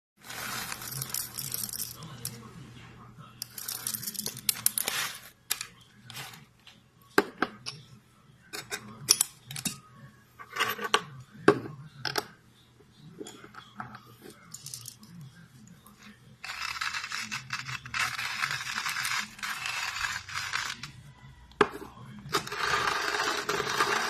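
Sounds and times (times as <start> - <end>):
metal coffee grinder clinking: 0.2 - 2.3, 3.4 - 5.3
scraping rustles: 0.2 - 2.4, 3.6 - 6.5.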